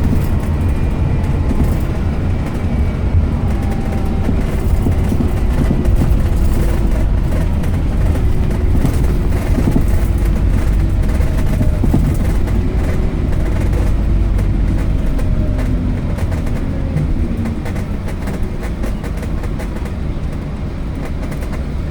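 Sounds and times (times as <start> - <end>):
bus diesel engine rumbling: 0.0 - 21.9.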